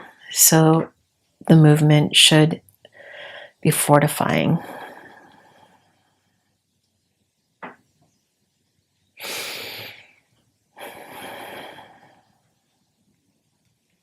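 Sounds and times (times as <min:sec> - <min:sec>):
person breathing close: 0:02.9 - 0:03.6, 0:04.6 - 0:06.2, 0:09.2 - 0:10.2, 0:10.8 - 0:12.4.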